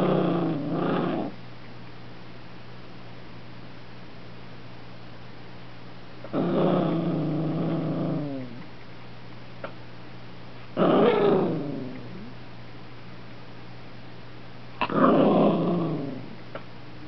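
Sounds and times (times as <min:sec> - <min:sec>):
puppy growling: 0:00.0 - 0:01.4, 0:06.2 - 0:08.6, 0:10.8 - 0:12.4, 0:14.8 - 0:16.4.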